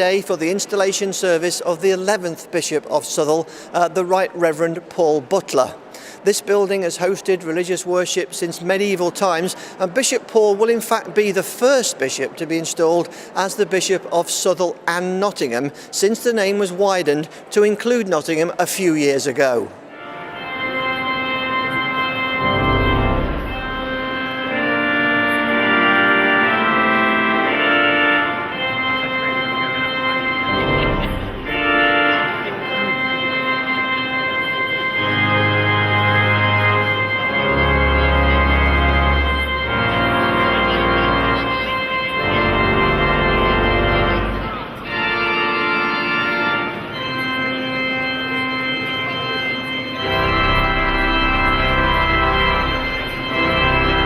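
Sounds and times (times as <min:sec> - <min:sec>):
organ playing held chords: 0:19.5 - 0:54.0.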